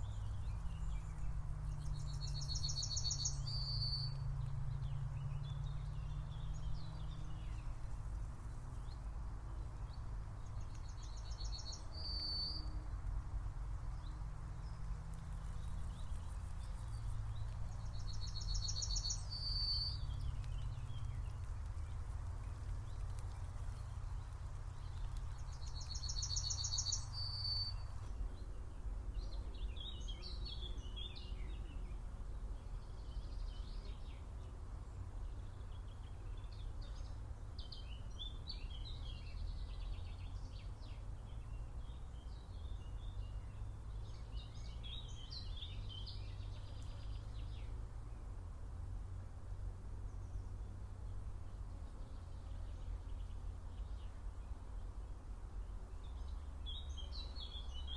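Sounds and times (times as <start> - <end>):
birds chirping: 0.0 - 4.1, 13.9 - 31.9
songbird trilling: 0.0 - 4.2, 18.0 - 21.0, 25.4 - 27.9.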